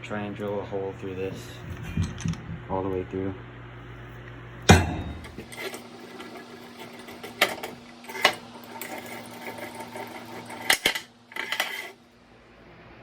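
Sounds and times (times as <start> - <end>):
mechanical hum: 0.0 - 13.0
metallic knocks and clanks: 4.7 - 5.8.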